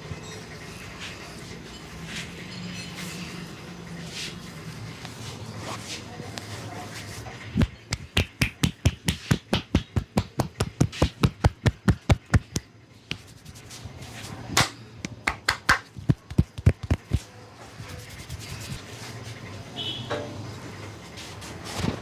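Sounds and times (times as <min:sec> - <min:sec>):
hands slapping body: 0:07.6 - 0:13.4, 0:14.6 - 0:17.3.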